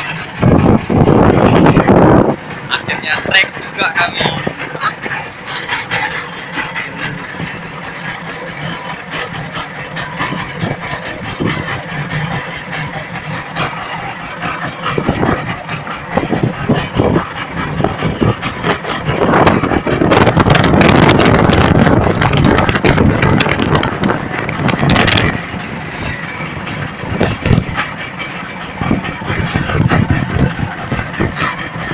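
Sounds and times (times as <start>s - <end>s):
boat engine running: 0.0s - 31.9s.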